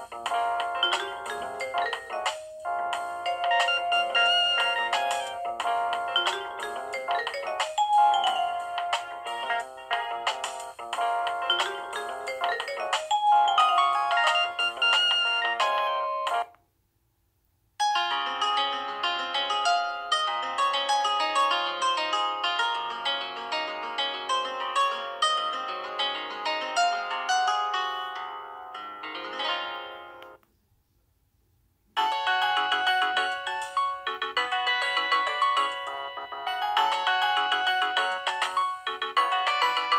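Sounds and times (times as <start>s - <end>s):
mobile phone ringtone: 0.0s - 16.5s, 17.8s - 30.3s, 32.0s - 39.9s.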